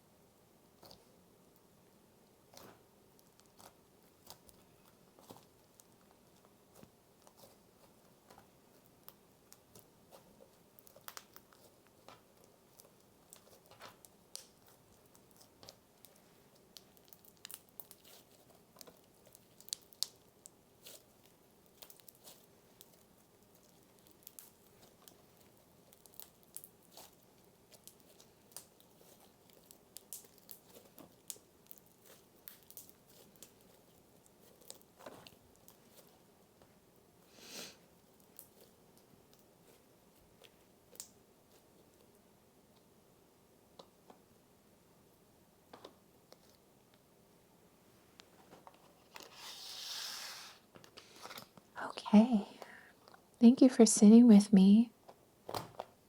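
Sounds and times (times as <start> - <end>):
cereal crunching and crackling: 0.8 - 42.9
slime squishing by hand: 2.4 - 42.9.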